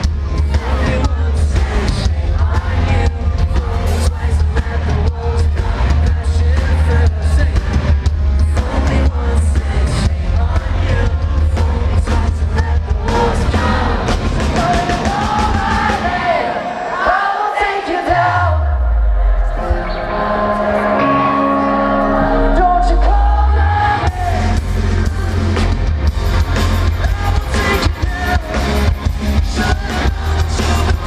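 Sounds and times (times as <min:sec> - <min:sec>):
heavy bass line: 0:00.0 - 0:16.4, 0:18.2 - 0:31.0
loud drums: 0:00.0 - 0:20.7, 0:23.4 - 0:31.0
person singing: 0:00.0 - 0:31.0
pop-punk band playing live: 0:00.0 - 0:31.0.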